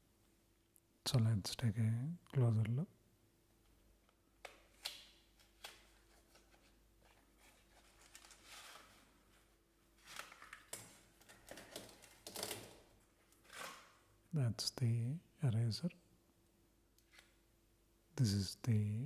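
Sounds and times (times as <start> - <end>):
packaging rustling: 4.7 - 13.9.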